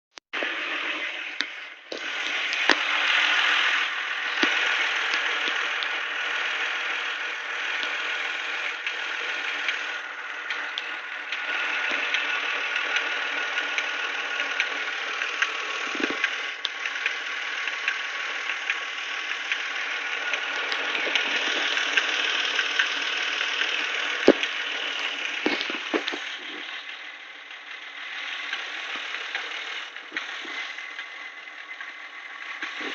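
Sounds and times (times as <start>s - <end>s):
car engine idling: 0.1s - 32.9s
engine ticking: 0.1s - 32.9s.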